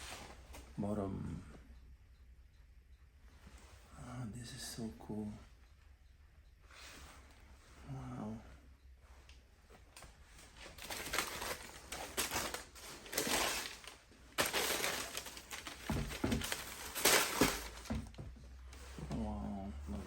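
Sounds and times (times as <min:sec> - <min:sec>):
tissue paper rustling and crinkling: 0:10.5 - 0:18.2.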